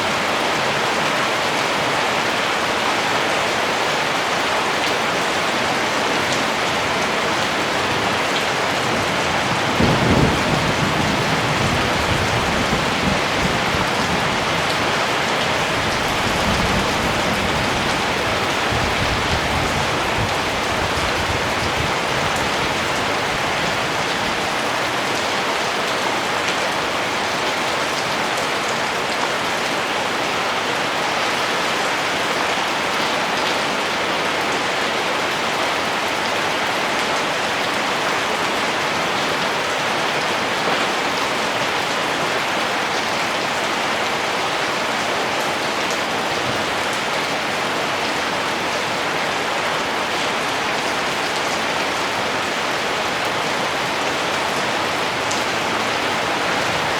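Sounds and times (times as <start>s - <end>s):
heavy rain: 0.0s - 56.9s
thunder rumbling: 8.5s - 23.6s.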